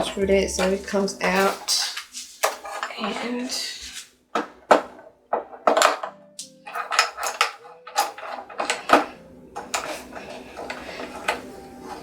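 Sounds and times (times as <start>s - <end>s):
metal and plastic clicks and knocks: 4.4s - 10.0s.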